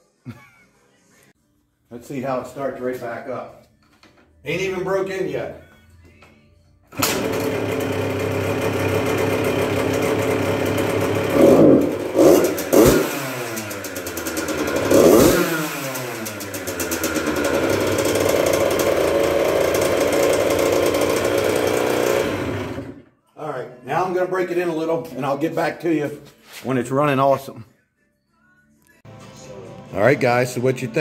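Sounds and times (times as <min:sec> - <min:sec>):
two-stroke engine revving: 0:07.0 - 0:23.0.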